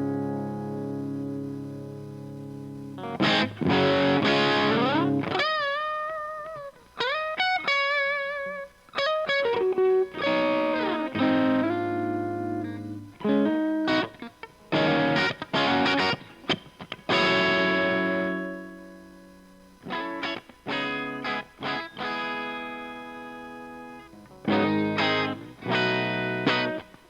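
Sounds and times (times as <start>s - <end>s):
electric guitar chords and lead: 0.0s - 27.0s.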